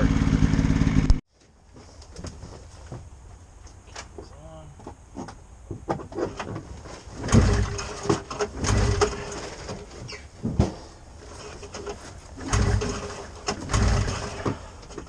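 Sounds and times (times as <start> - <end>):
engine recoil starter pulls: 7.2 - 10.2, 11.2 - 15.0.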